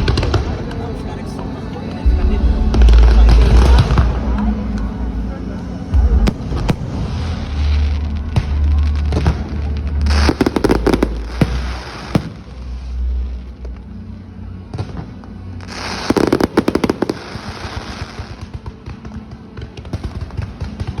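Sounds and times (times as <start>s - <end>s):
music with steady bass: 0.0s - 18.1s
rapid firecracker bangs: 5.8s - 12.6s, 15.8s - 21.0s.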